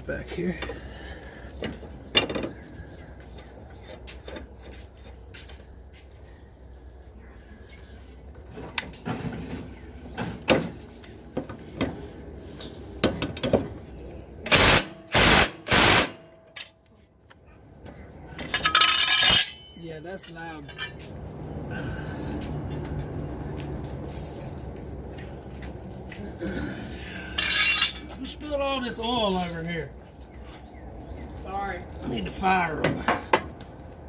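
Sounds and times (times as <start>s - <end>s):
power tool bursts: 14.5s - 16.2s
metal tool clinks and knocks: 18.4s - 21.1s, 27.3s - 28.2s.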